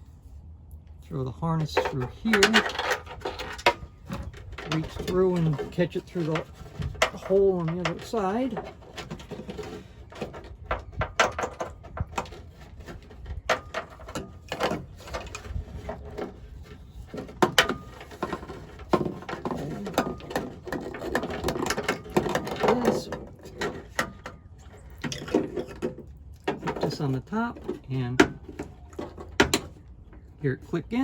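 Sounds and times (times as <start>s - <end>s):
wire harness and plastic parts rattling: 1.6s - 31.0s.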